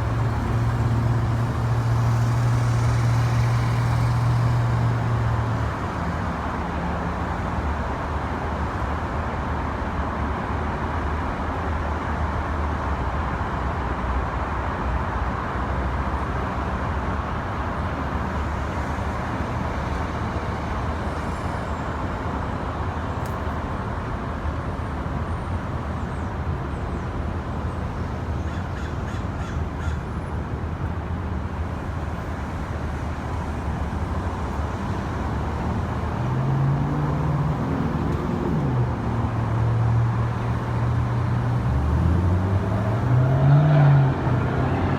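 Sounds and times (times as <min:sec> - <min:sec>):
road traffic hum: 0:00.0 - 0:44.9
crows cawing: 0:28.5 - 0:30.0.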